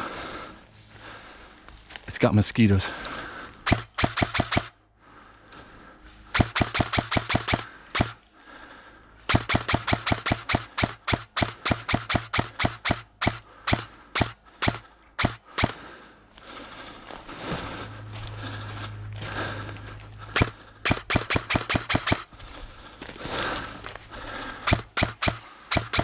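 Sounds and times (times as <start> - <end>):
airsoft rifle shots: 3.6 - 4.8, 6.3 - 8.2, 9.3 - 15.9, 20.4 - 22.3, 24.7 - 26.0.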